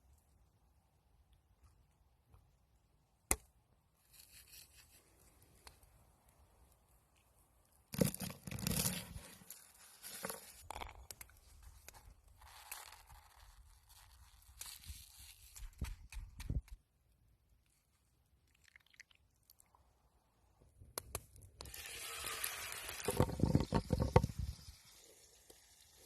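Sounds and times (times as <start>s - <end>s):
food packaging tearing and crinkling: 12.4s - 16.7s.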